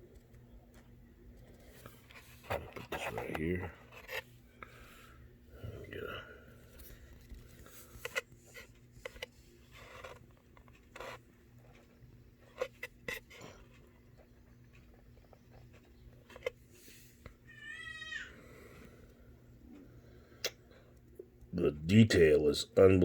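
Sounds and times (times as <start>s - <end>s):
cat meowing: 17.5s - 18.3s.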